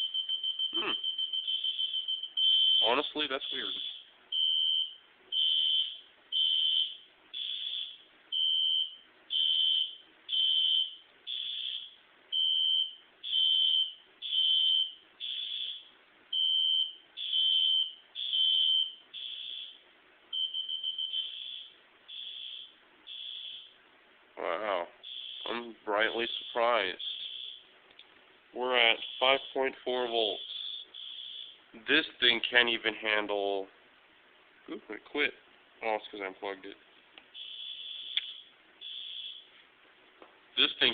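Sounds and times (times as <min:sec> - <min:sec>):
fire alarm horn beeps: 0:00.0 - 0:19.8, 0:20.4 - 0:23.7, 0:26.3 - 0:27.6, 0:30.4 - 0:31.6, 0:37.4 - 0:39.5.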